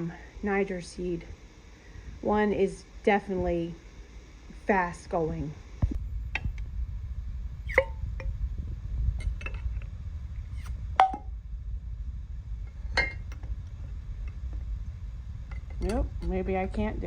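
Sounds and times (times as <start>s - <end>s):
low rumble: 5.2s - 17.0s
kitchen pots and utensils clinking: 15.6s - 16.4s.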